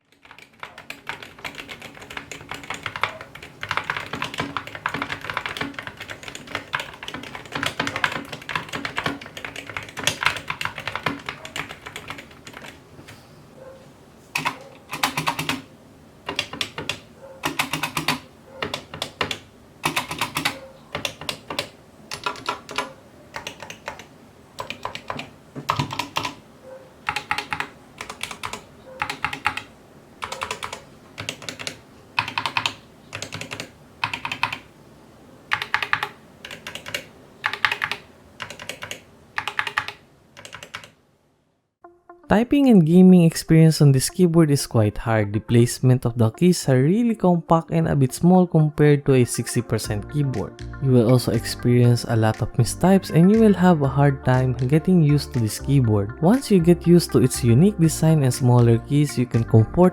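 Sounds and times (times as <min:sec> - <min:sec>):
typing on keyboard: 0:00.0 - 0:12.8, 0:14.4 - 0:15.7, 0:16.3 - 0:26.4, 0:27.0 - 0:34.7, 0:35.5 - 0:41.0.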